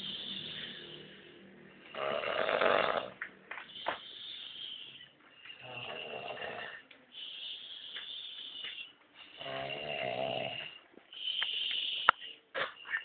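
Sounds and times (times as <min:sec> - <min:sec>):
person snoring: 0:01.9 - 0:03.2, 0:05.6 - 0:06.8, 0:09.4 - 0:10.8.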